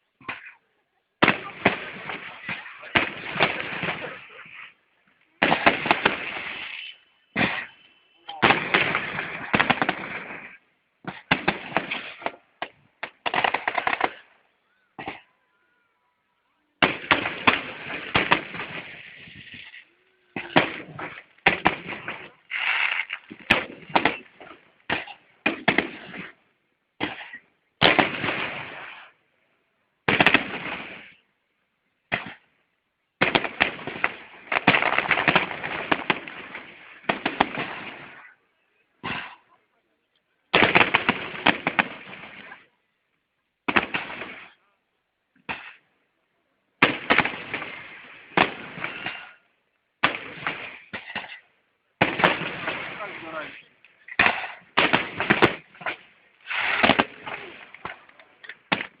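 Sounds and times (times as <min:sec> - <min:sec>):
fireworks bangs and crackling: 0:01.2 - 0:04.6, 0:05.4 - 0:14.3, 0:16.8 - 0:19.8, 0:20.4 - 0:26.4, 0:27.8 - 0:29.2, 0:30.0 - 0:31.2, 0:33.2 - 0:38.3, 0:40.5 - 0:42.7, 0:43.6 - 0:44.6, 0:46.8 - 0:49.1, 0:50.0 - 0:51.4, 0:52.0 - 0:59.0.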